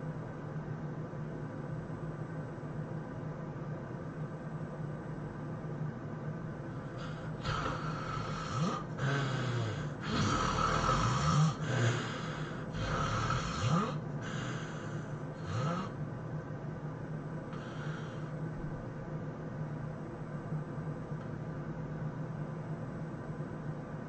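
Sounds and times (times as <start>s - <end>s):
person snoring heavily: 6.8s - 16.0s, 17.5s - 18.3s.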